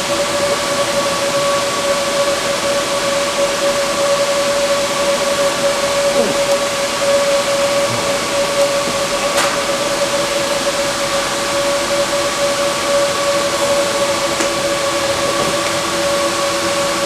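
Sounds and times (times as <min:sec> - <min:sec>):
cooling fans whooshing: 0:00.0 - 0:17.0.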